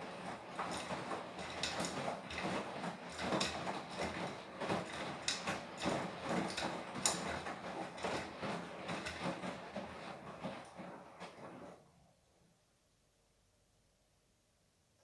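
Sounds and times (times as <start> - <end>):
washing machine drum tumbling laundry: 0.0 - 11.9.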